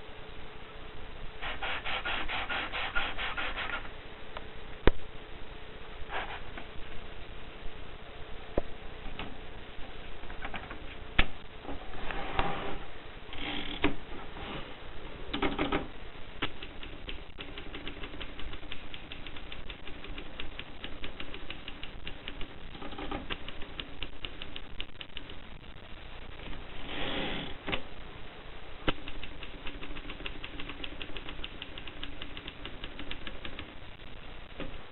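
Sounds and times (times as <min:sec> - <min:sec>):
typewriter keys clicking: 0:16.4 - 0:25.4, 0:28.9 - 0:33.7.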